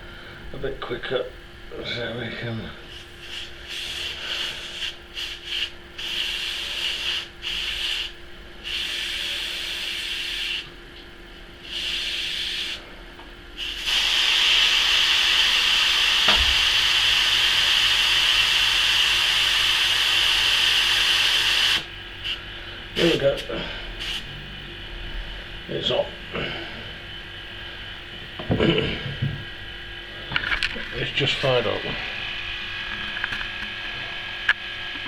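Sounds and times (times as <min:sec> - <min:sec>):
compressor motor humming: 0:00.0 - 0:35.0
compressed air hissing from tank: 0:02.9 - 0:10.7, 0:11.6 - 0:12.9, 0:13.6 - 0:22.4, 0:24.0 - 0:24.3.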